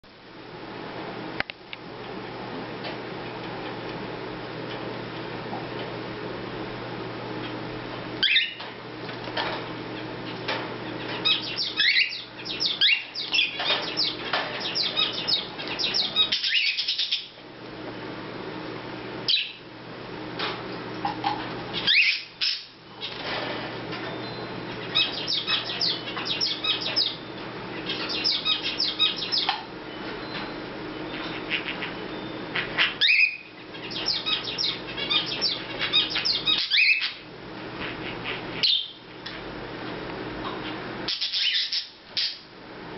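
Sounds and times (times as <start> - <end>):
steady low hum: 0.0 - 41.1
cockatiel chirping: 8.2 - 8.6, 11.2 - 17.3, 19.3 - 19.6, 21.8 - 22.7, 24.3 - 27.2, 27.9 - 29.5, 32.6 - 37.2, 38.2 - 39.0, 41.1 - 42.4
rising whistle calls: 11.3 - 17.3, 21.9 - 22.6.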